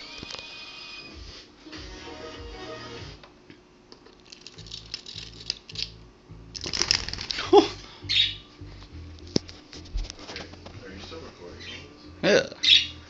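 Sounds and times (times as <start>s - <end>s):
music with steady beat: 0.0s - 3.3s, 5.9s - 6.6s, 7.7s - 11.3s.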